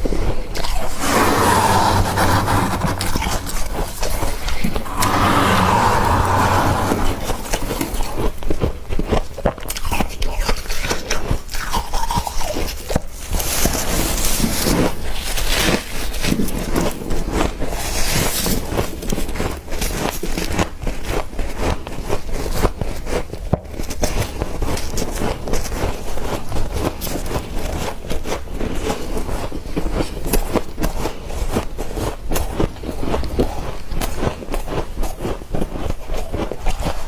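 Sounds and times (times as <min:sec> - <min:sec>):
frost crunching while chewed: 0:07.8 - 0:13.6.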